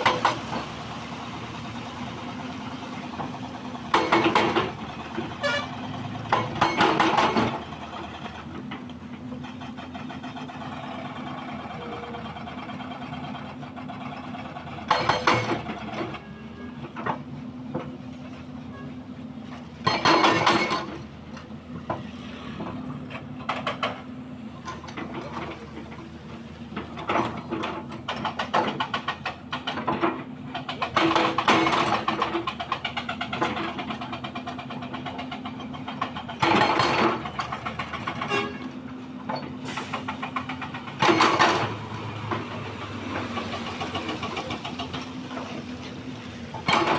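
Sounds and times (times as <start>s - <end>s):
diesel engine running: 0.0s - 46.9s
harsh scraping and clattering: 26.7s - 46.9s.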